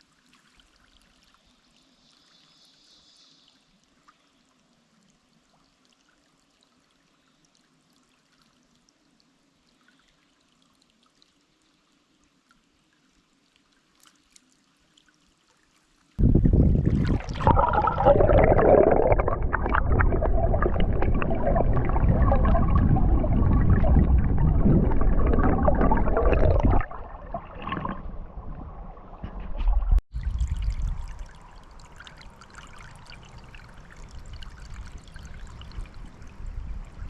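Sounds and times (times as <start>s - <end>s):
rushing gurgling water: 16.2s - 37.0s.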